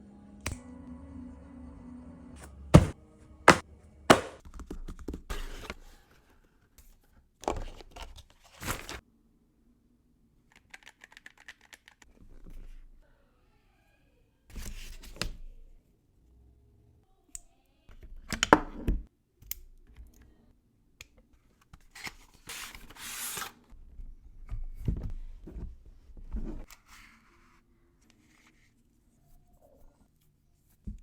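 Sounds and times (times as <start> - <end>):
dull thuds: 2.8 - 4.4
sharp hard knocks: 2.8 - 4.4.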